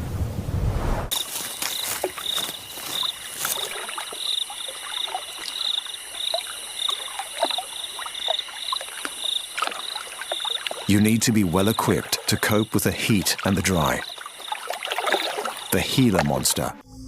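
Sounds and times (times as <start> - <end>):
high-pitched insect buzz: 1.1 - 10.8
insects trilled chirping: 1.1 - 16.7.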